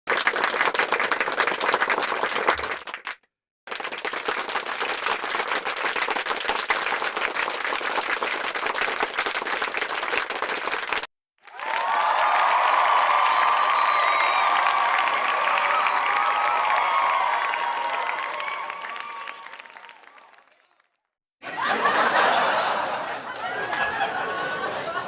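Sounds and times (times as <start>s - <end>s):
many hands clapping: 0.0s - 21.2s, 23.3s - 24.1s
crowd cheering: 0.1s - 3.1s, 3.7s - 25.0s.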